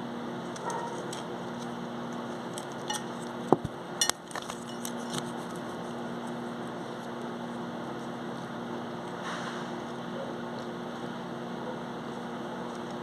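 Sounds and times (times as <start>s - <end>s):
steady low hum: 0.0s - 13.0s
cutlery clinking on a plate: 2.9s - 3.1s.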